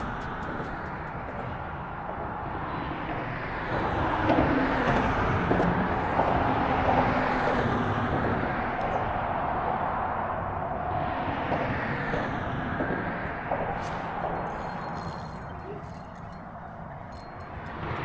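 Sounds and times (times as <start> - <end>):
boat motor running: 13.8 - 18.0.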